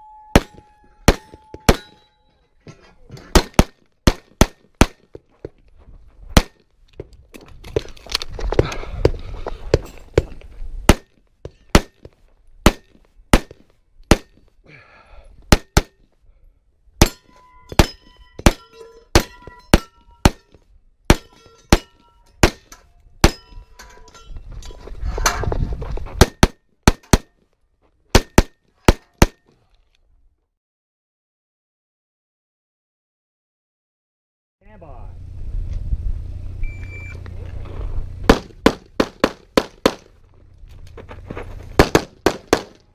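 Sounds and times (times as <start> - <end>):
steel targets clanging: 0.1 - 3.6, 17.0 - 25.4
low rumbling noise: 34.6 - 42.2.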